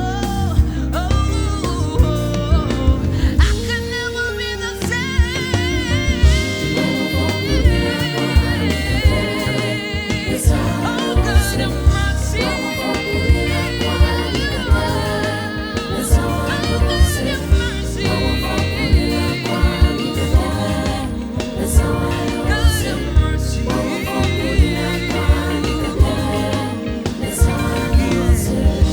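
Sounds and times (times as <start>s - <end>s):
band with drum beat: 0.0s - 3.9s, 4.8s - 28.9s
gospel singing voices: 0.0s - 28.9s.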